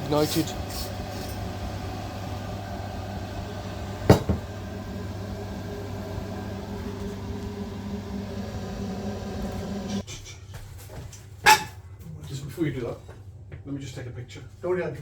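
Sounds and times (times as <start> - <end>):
gas boiler fan humming: 0.0 - 10.1.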